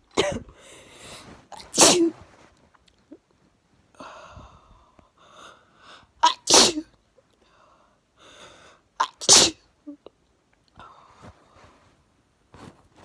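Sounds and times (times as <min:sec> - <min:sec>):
person sneezing: 0:01.2 - 0:02.2, 0:06.2 - 0:06.9, 0:09.0 - 0:09.6
breathy in-breath: 0:04.0 - 0:06.1, 0:07.4 - 0:08.9.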